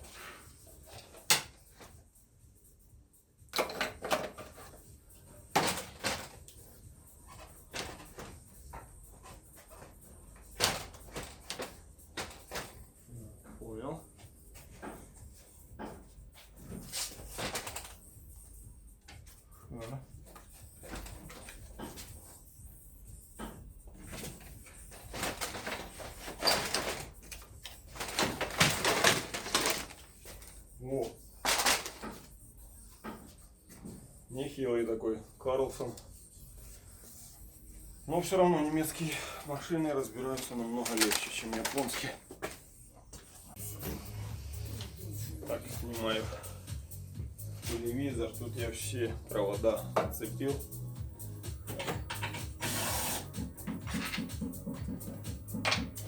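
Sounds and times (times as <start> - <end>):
car parts and tools clattering: 3.5 - 6.6, 7.2 - 12.8, 14.5 - 18.0, 20.2 - 22.3, 23.4 - 30.6, 31.4 - 34.0, 38.1 - 42.7, 51.6 - 52.6, 53.5 - 56.0.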